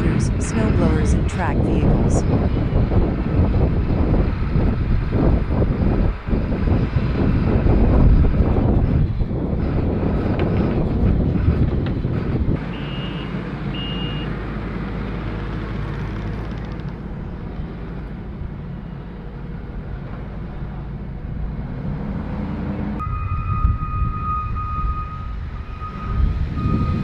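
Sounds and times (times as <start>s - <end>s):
heavy vehicle engines rumbling: 0.0s - 27.0s
vehicle reversing beeper: 12.7s - 14.3s, 23.0s - 27.0s.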